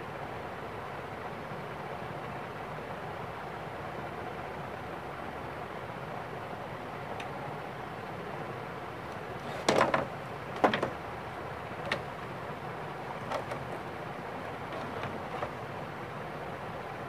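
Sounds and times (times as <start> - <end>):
sharp clatters and knocks: 9.4 - 11.1, 11.7 - 12.4, 13.1 - 15.7.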